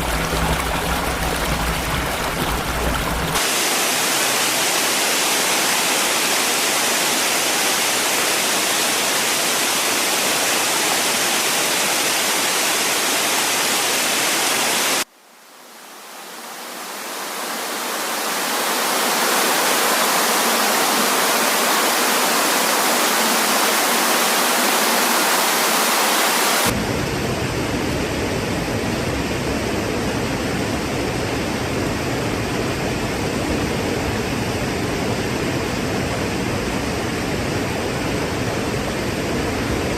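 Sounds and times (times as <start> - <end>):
deep rumbling rush of falling water: 0.0 - 14.2
waterfall rushing: 0.0 - 14.8, 17.0 - 26.8.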